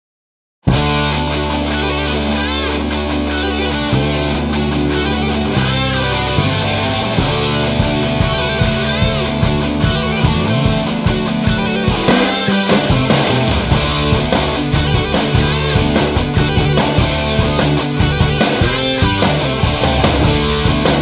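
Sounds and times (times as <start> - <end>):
distorted electric guitar: 0.7 - 21.0
drum hits: 7.2 - 21.0.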